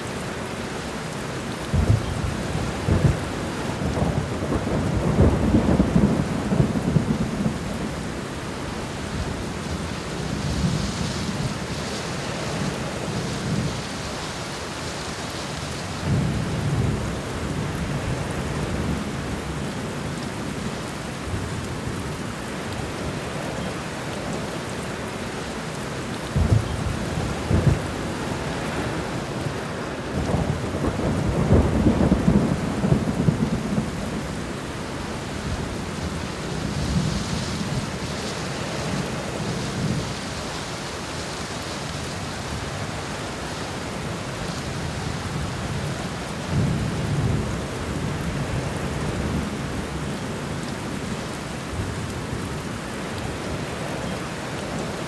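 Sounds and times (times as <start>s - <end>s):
steady rain: 0.0s - 55.0s
thunder rumbling: 1.7s - 8.2s, 26.3s - 40.6s.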